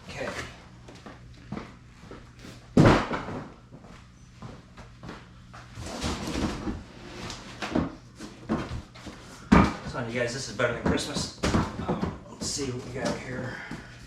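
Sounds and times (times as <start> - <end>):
rustling and scraping of parts: 5.6 - 13.8.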